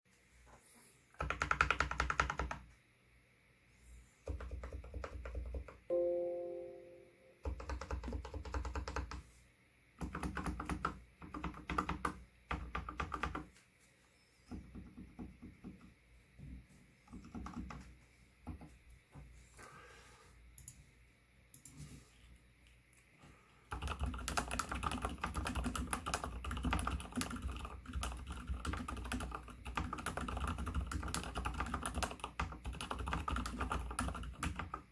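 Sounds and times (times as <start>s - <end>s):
fingernails clicking on keycaps: 1.2s - 2.7s, 4.3s - 5.9s, 7.4s - 9.2s, 10.0s - 13.6s, 17.1s - 18.0s, 23.7s - 34.9s
muted mechanical keyboard typing: 1.2s - 2.7s, 4.2s - 5.9s, 7.4s - 9.2s, 10.0s - 13.5s, 17.1s - 18.0s, 23.7s - 34.9s.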